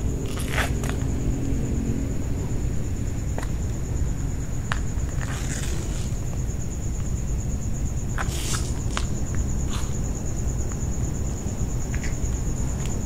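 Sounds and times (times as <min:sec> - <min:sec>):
insects trilling: 0:00.0 - 0:13.0
clicks and scuffs: 0:00.3 - 0:01.1, 0:04.7 - 0:06.4, 0:08.2 - 0:10.0.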